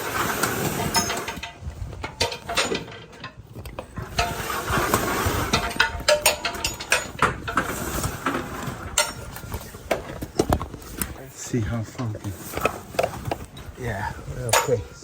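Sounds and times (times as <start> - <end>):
trailer curtain sliding on rail: 0.0 - 1.6, 3.9 - 10.2, 12.1 - 15.0
rattling clicks and clanks: 0.0 - 15.0.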